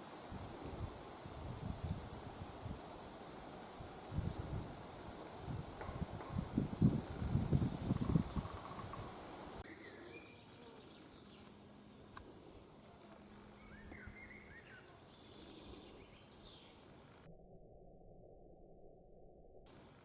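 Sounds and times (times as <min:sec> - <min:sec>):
wind buffeting microphone: 0:00.4 - 0:02.9, 0:03.8 - 0:09.6.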